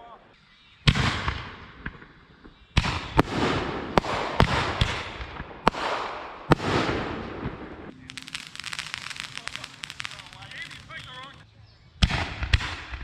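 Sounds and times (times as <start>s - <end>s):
fireworks bangs: 2.8s - 11.4s
fireworks crackle and hiss: 7.8s - 11.4s.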